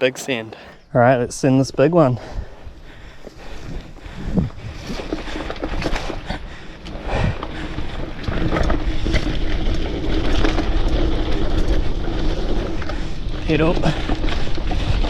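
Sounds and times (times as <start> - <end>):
wind rushing over microphone: 1.2 - 15.0
mountain bike clicks and rattles: 2.3 - 15.0
tyres on dirt: 2.6 - 15.0.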